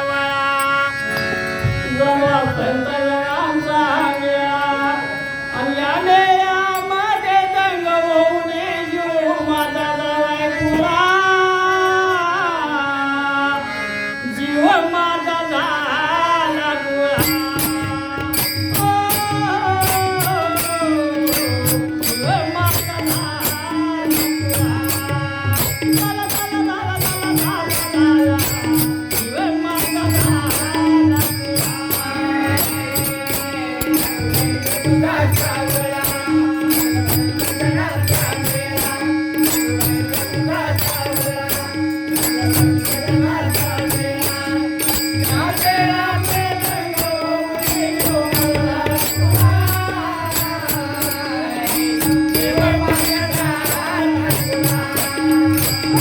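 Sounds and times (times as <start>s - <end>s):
devotional folk melody: 0.0s - 56.0s
jingling percussion: 0.0s - 56.0s
held drone tone: 17.2s - 56.0s.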